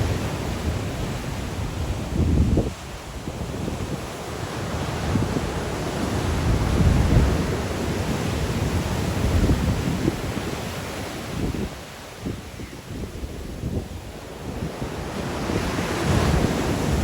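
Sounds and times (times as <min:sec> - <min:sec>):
sea waves breaking on shore: 0:00.0 - 0:17.0
wind buffeting microphone: 0:00.0 - 0:17.0.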